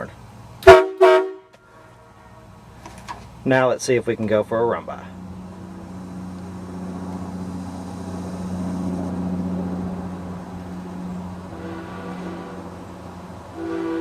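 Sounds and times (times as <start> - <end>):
vehicle engine passing: 4.5 - 14.0.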